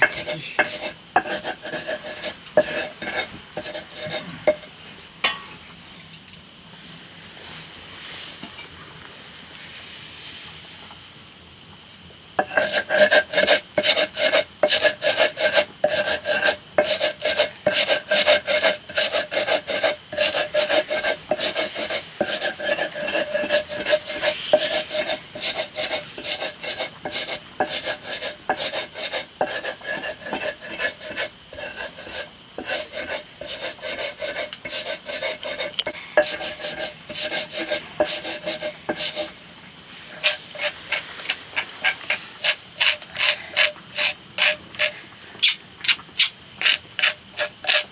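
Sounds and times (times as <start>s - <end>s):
rhythmic scraping strokes: 0.0s - 4.3s, 12.4s - 39.3s.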